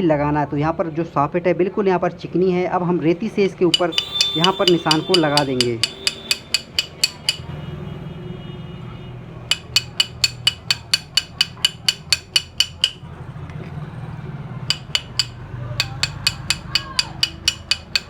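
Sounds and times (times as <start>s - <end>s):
metal file on steel shaft: 3.7s - 7.5s, 9.5s - 13.0s, 14.7s - 18.0s.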